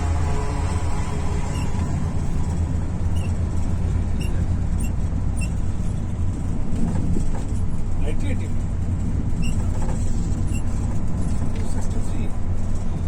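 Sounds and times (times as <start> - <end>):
diesel bus engine rumbling: 0.0 - 13.0
faint high squeaks: 0.4 - 2.1, 3.0 - 3.4, 4.1 - 5.9, 9.4 - 10.8.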